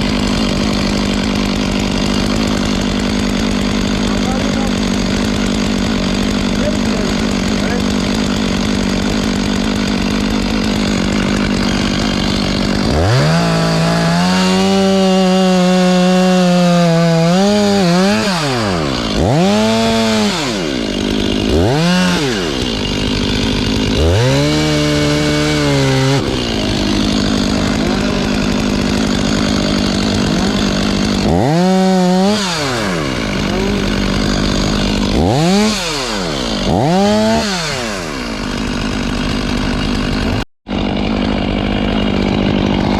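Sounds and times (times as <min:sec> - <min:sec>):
chainsaw idling and revving: 0:00.0 - 0:42.9.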